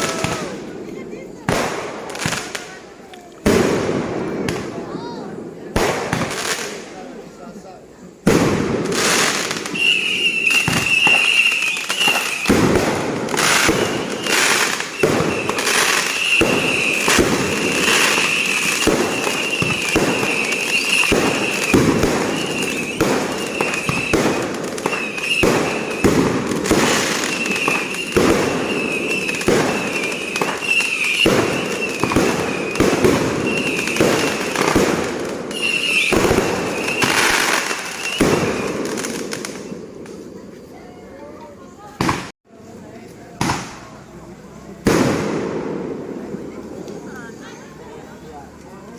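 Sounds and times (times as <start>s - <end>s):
fireworks bangs: 0.0s - 7.2s, 8.1s - 41.1s, 41.7s - 42.4s, 43.2s - 48.2s
high whistle: 9.7s - 12.5s, 13.5s - 26.1s, 27.1s - 32.8s, 33.4s - 34.6s, 35.5s - 38.8s.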